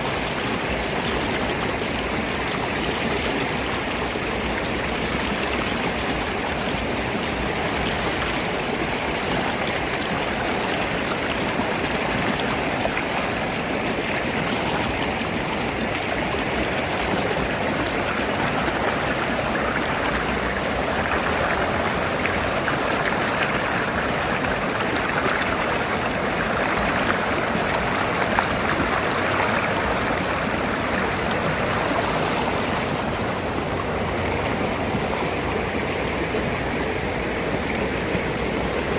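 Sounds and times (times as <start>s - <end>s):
river running over rocks: 0.0s - 38.9s.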